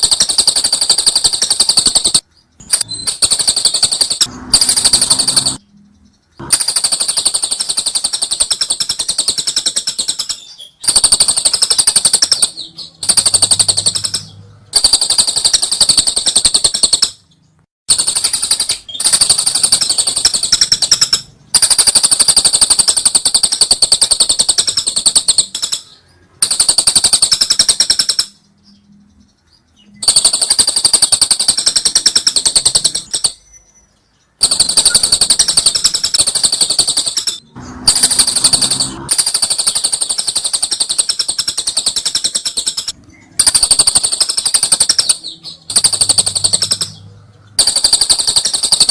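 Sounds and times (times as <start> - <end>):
lovebird shrill chattering: 7.0 - 17.3.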